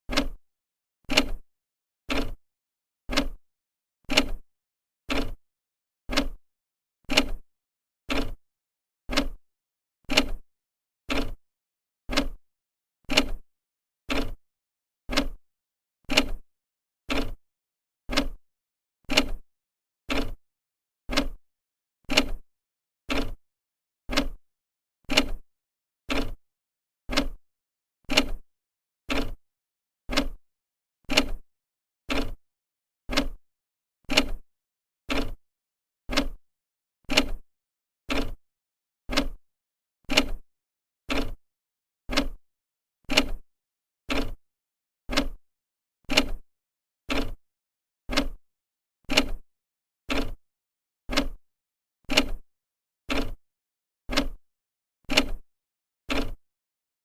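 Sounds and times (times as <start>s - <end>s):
clock ticking: 0.1s - 0.4s, 39.1s - 39.4s, 45.1s - 45.4s, 48.1s - 48.4s, 51.1s - 51.4s, 53.1s - 53.4s, 54.1s - 54.4s.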